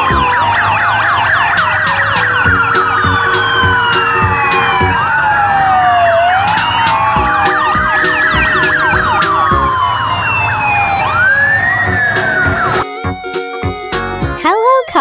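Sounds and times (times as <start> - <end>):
music with steady beat: 0.0 - 5.2, 6.4 - 9.9, 11.8 - 14.5
emergency sirens wailing: 0.0 - 15.0.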